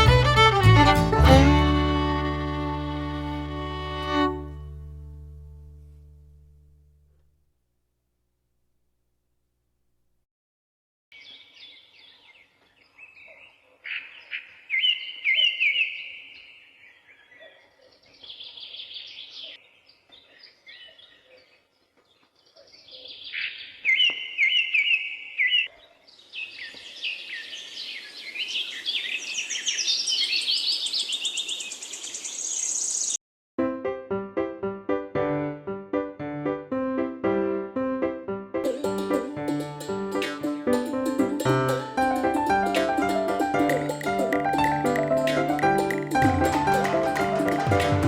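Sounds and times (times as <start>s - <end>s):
birds chirping: 11.2s - 33.2s.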